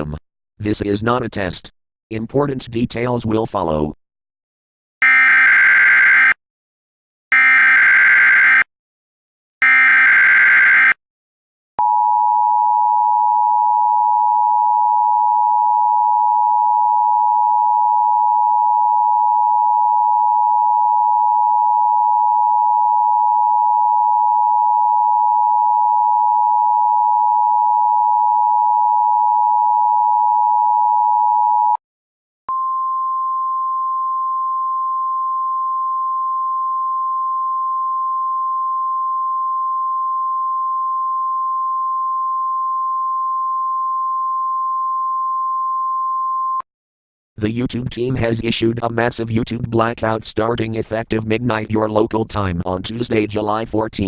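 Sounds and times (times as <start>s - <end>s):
single steady tone: 11.8s - 31.8s, 32.5s - 46.6s.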